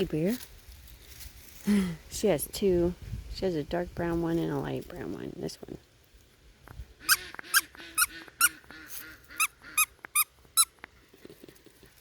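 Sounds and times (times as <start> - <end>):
squeaky dog toy squeaks: 7.0 - 10.8.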